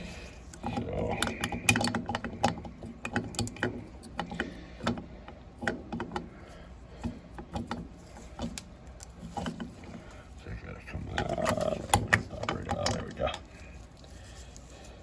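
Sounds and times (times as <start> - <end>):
metal clicks of hand tools: 0.0 - 6.3, 11.1 - 13.5.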